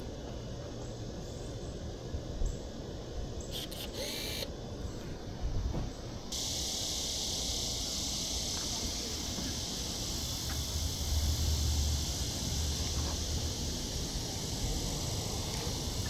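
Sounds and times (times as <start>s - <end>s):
steady high-pitched hiss: 0.0s - 16.0s
motorized film advance whir: 3.4s - 4.5s
camera shutter click: 3.5s - 4.5s.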